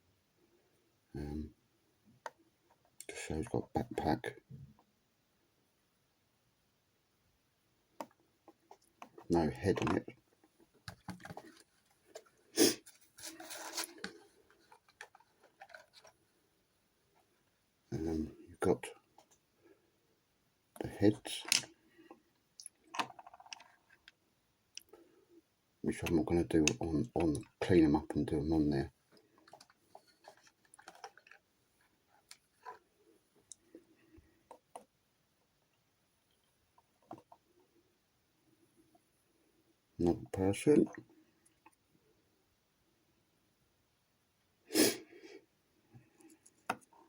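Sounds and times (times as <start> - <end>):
packaging rustle: 12.8 - 16.2
clicks of small figures handled: 21.4 - 21.7.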